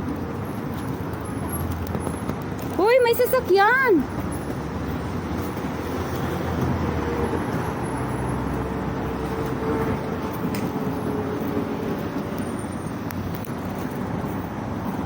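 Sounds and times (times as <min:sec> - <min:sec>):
car passing by: 0:04.2 - 0:15.0.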